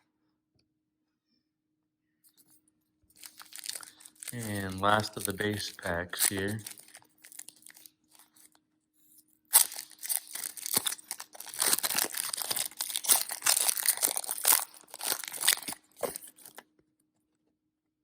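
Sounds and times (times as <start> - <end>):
foil wrapper tearing and crinkling: 3.1 - 8.6, 9.5 - 16.6.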